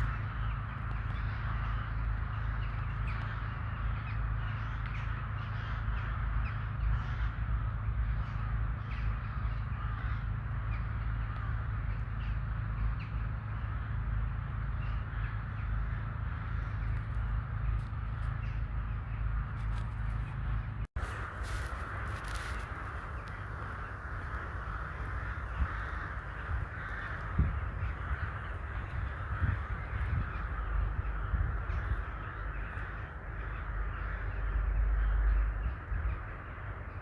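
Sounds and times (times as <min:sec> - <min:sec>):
crows cawing: 0:04.4 - 0:07.4, 0:09.4 - 0:10.4, 0:21.0 - 0:35.6.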